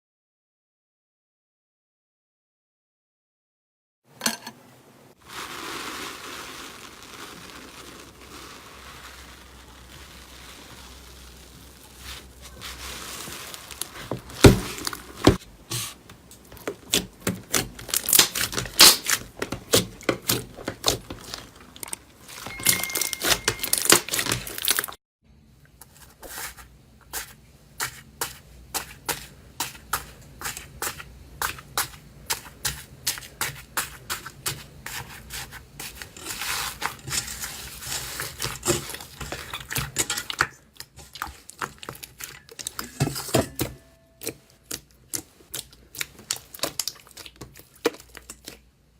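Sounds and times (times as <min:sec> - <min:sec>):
slime squeezing hiss: 0:05.2 - 0:14.4
slime crackling and popping: 0:05.2 - 0:15.4, 0:16.6 - 0:22.0, 0:44.2 - 0:48.6.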